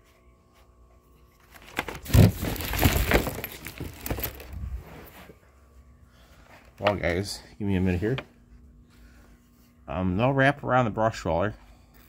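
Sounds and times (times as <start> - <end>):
plastic vacuum parts clattering: 1.5 - 4.6.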